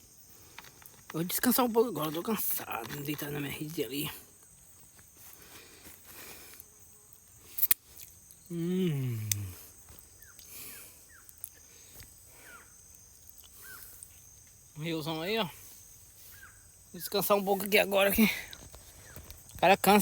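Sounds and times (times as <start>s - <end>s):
high insect trill: 0.0s - 20.0s
man groaning: 8.5s - 9.7s
bird chirps: 10.1s - 17.8s.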